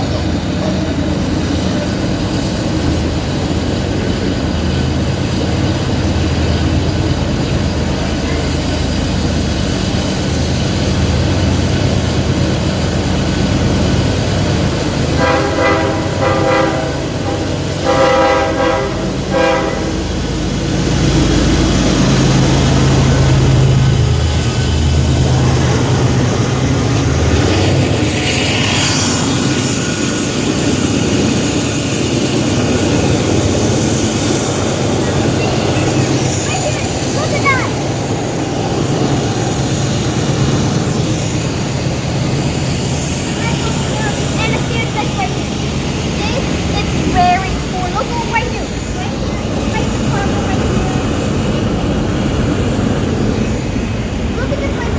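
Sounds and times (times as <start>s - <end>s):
diesel locomotive rumbling: 0.0s - 54.9s
locomotive air horn blasts: 15.2s - 20.1s.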